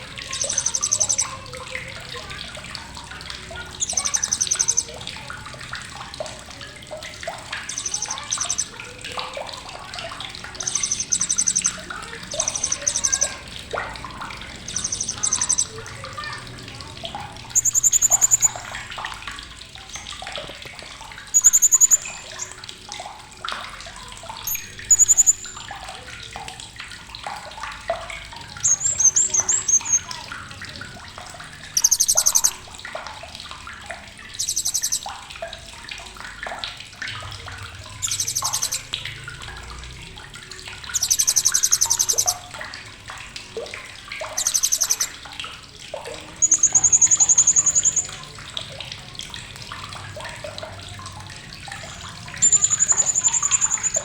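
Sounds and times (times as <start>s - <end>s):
parrot high-pitched chattering calls: 0.0s - 5.5s, 7.5s - 19.0s, 21.3s - 22.6s, 24.4s - 25.7s, 28.6s - 30.2s, 31.7s - 32.8s, 34.4s - 35.1s, 37.9s - 38.9s, 40.9s - 42.5s, 44.4s - 45.2s, 46.2s - 48.3s, 51.8s - 54.0s
soft background bird chirping: 0.0s - 54.0s.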